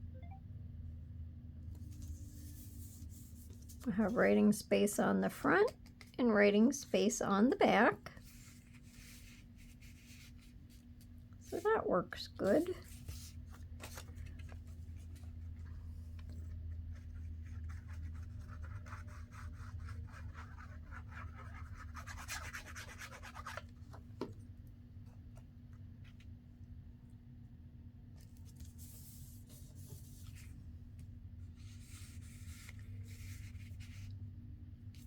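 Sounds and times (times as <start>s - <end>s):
low hum: 0.0s - 4.7s
paper rustling: 12.8s - 24.0s.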